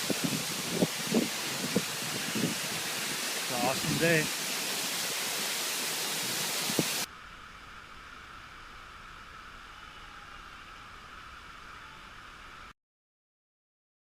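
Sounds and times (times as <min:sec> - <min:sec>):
waterfall rushing: 0:00.0 - 0:07.1
steady hiss: 0:00.0 - 0:12.7.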